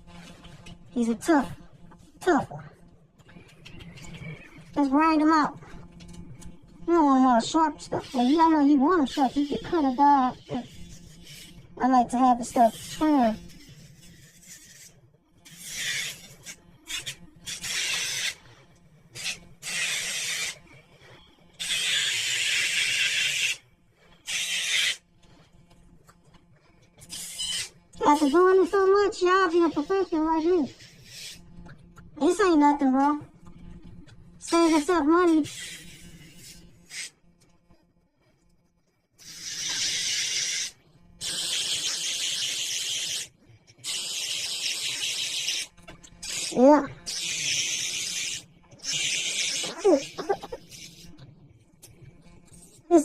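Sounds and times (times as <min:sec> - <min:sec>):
nail grinder rasping dog claws: 0:12.5 - 0:18.5, 0:19.2 - 0:20.7, 0:21.6 - 0:23.6, 0:24.2 - 0:25.0, 0:27.0 - 0:31.4, 0:34.5 - 0:37.2, 0:39.2 - 0:51.1.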